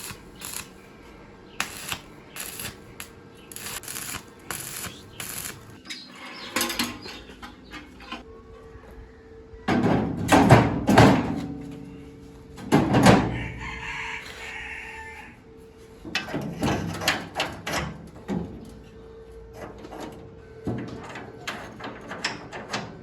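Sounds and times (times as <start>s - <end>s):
rooster crowing: 13.2s - 15.5s.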